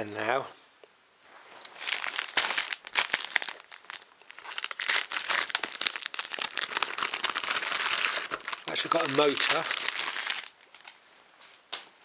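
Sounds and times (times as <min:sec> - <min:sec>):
packaging crinkling: 0:01.6 - 0:11.0.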